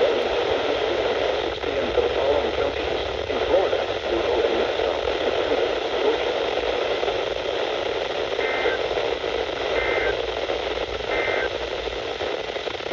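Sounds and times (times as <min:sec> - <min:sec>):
radio static hiss: 0:00.0 - 0:12.9
two-tone data warbles: 0:11.1 - 0:11.5.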